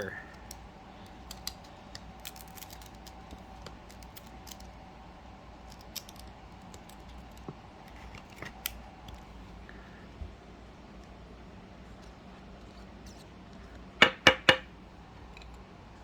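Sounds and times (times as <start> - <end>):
faint steady hum: 0.0 - 16.0
trading cards clicking and scraping: 0.2 - 4.8, 5.6 - 9.3.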